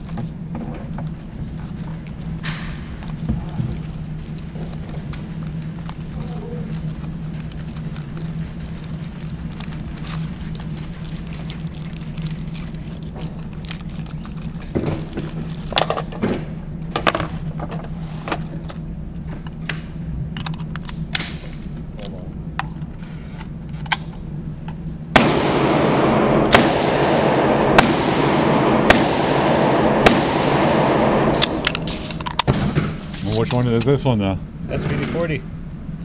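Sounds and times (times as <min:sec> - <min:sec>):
steady low hum: 0:00.0 - 0:36.0
handgun shots: 0:25.2 - 0:32.9
loud steady hiss: 0:25.2 - 0:33.4.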